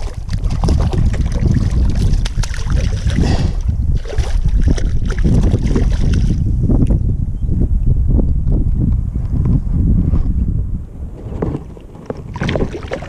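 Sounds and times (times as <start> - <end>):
water noise: 0.0 - 7.0, 11.0 - 13.0
wind buffeting microphone: 0.0 - 13.0.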